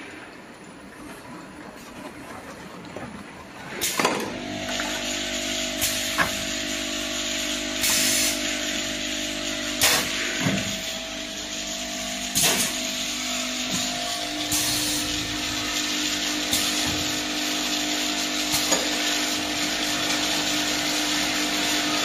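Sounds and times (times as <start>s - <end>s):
motor hum: 4.0s - 22.0s
air hiss: 7.8s - 8.4s.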